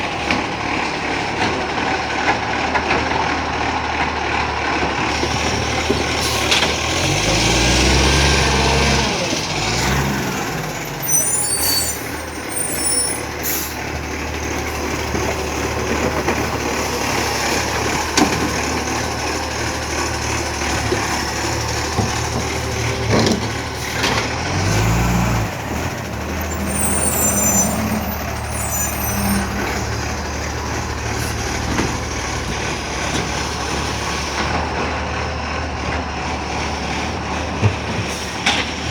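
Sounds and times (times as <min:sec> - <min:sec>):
garbage truck diesel engine revving: 0:00.0 - 0:38.9
air brakes hissing: 0:05.1 - 0:06.8, 0:10.3 - 0:14.1, 0:23.6 - 0:31.6.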